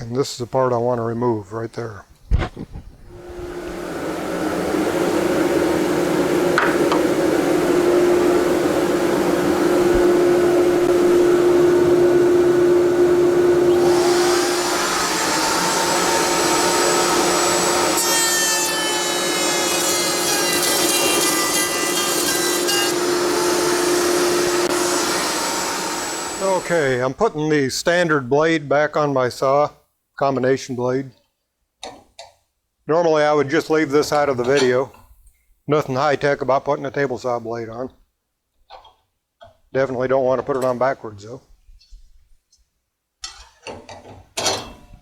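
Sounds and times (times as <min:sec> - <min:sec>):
router cutting wood: 0:03.1 - 0:26.9.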